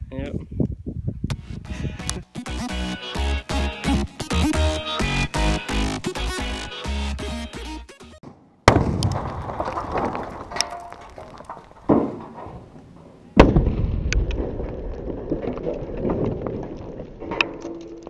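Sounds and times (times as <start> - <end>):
explosions with rumble: 8.7 - 12.3, 13.4 - 17.2.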